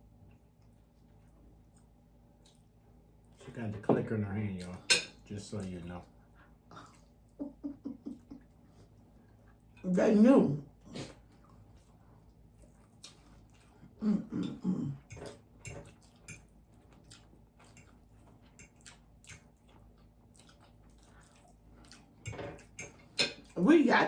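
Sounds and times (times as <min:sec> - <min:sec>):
chewing and crunching: 0:00.3 - 0:03.4, 0:10.9 - 0:23.6.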